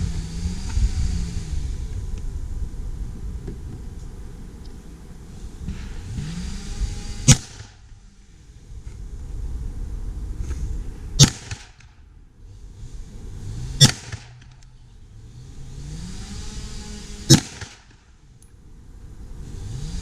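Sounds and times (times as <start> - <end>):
low engine rumble: 0.0 - 20.0
gunshots with echo: 11.2 - 11.8, 13.8 - 14.4, 17.3 - 17.9.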